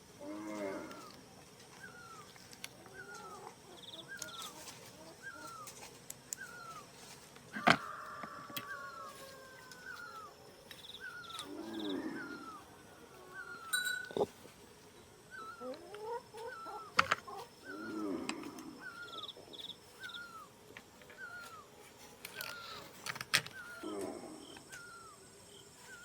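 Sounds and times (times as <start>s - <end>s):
low drawn-out animal call: 0.2s - 1.2s, 11.2s - 14.4s, 15.3s - 19.3s, 23.6s - 25.2s.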